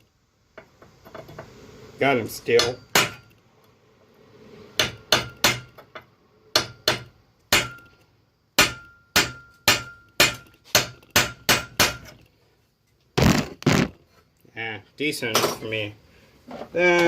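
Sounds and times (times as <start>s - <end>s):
hammer striking metal punch: 2.5s - 3.3s, 4.8s - 5.9s, 6.5s - 8.0s, 8.6s - 12.2s.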